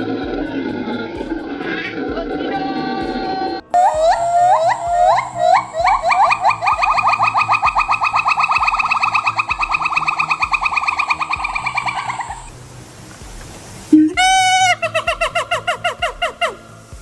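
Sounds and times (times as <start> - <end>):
monkey trilling: 3.8 - 12.6, 14.1 - 16.6.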